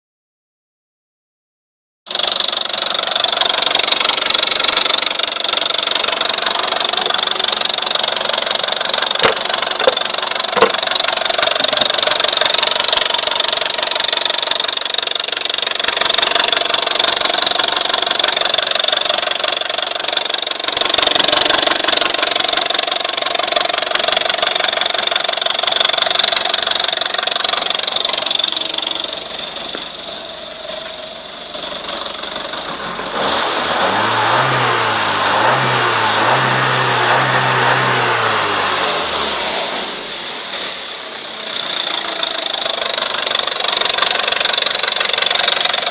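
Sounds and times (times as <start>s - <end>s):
fast ticking rattle: 2.1s - 30.2s, 41.4s - 45.9s
car engine running: 2.1s - 45.9s.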